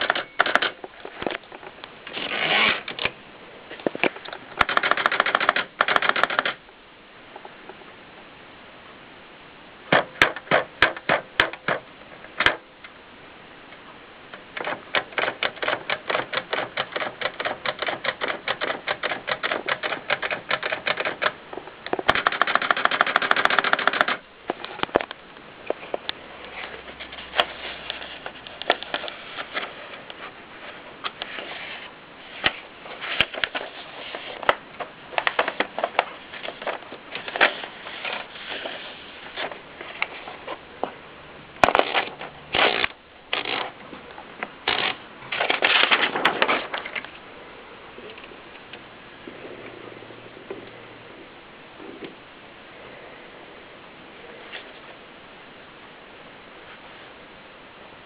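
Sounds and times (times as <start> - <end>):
typewriter keystroke clacks: 0.0 - 0.8, 4.6 - 6.6, 9.9 - 11.8, 14.6 - 24.2.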